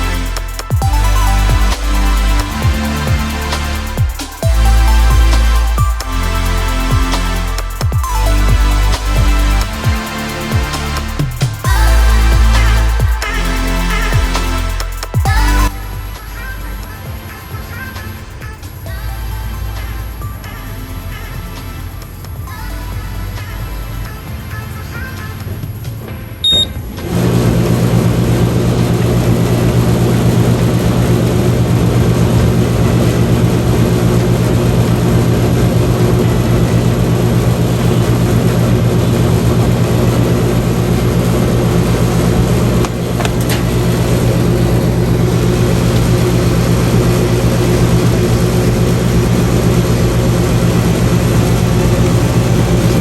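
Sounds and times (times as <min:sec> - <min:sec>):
short beep: 0:26.4 - 0:26.8
clothes dryer humming: 0:26.4 - 0:53.0.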